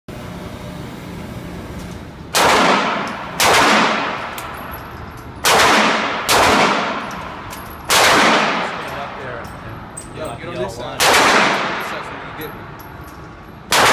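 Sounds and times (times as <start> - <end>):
pistol shots with ringing tail: 2.3 - 4.7, 5.4 - 8.9, 11.0 - 12.2, 13.7 - 13.9.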